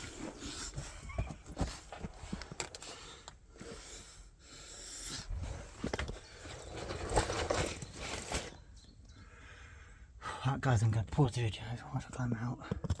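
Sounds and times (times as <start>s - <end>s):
hard breathing: 0.0s - 6.6s, 9.1s - 10.4s.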